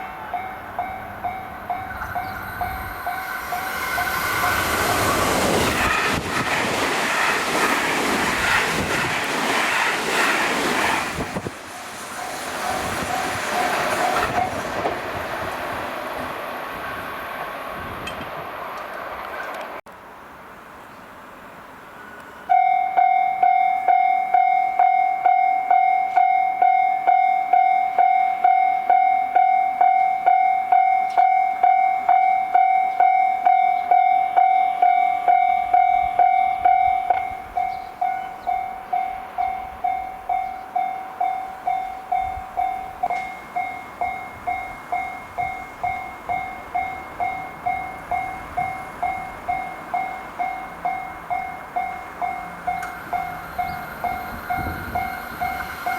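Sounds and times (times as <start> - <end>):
level-crossing warning bell ringing: 0.0 - 5.7, 11.4 - 14.6, 22.5 - 55.9
passing train running noise: 0.0 - 55.9.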